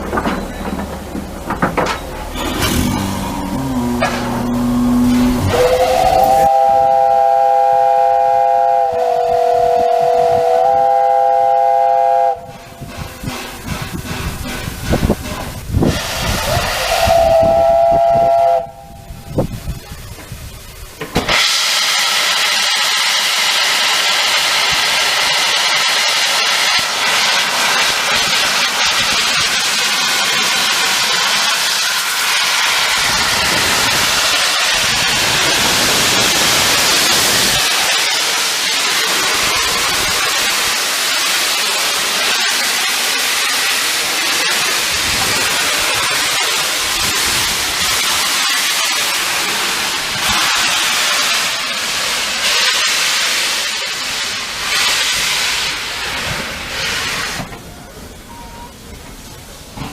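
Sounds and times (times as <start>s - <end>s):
steam locomotive hissing steam: 0.0s - 59.9s.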